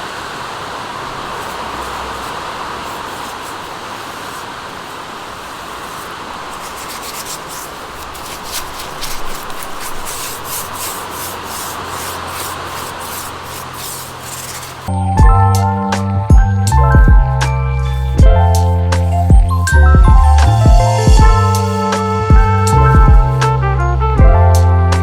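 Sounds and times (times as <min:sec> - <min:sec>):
rain hissing: 0:00.0 - 0:15.0, 0:16.7 - 0:24.2
paintbrush scraping metal mesh: 0:01.4 - 0:14.9.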